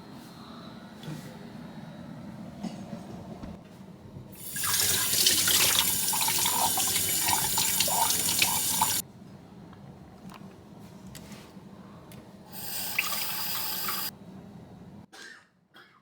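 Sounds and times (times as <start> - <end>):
water running from tap: 4.4 - 9.0, 12.6 - 14.1.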